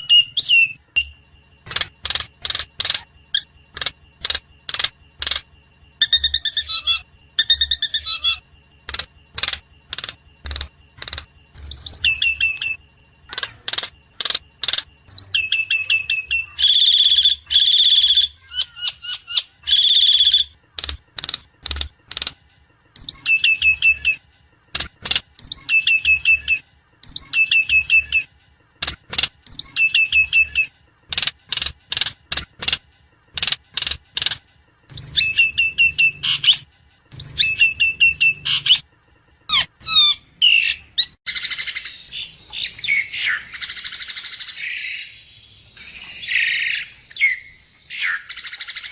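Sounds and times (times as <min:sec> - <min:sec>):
harsh rasping bird calls: 0:00.0 - 0:22.3, 0:39.5 - 0:48.9
sharp bird clicks: 0:00.0 - 0:22.4, 0:23.0 - 0:38.8.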